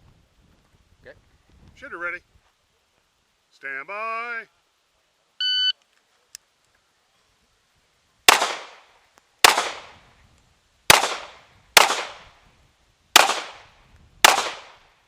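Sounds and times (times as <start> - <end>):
pistol shots with echo: 8.3 - 8.8, 9.4 - 10.0, 10.9 - 12.2, 13.2 - 13.6, 14.2 - 14.8.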